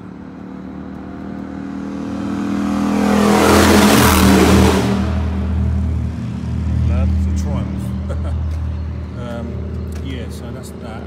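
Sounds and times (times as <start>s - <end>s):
motorcycle passing: 0.0s - 11.0s.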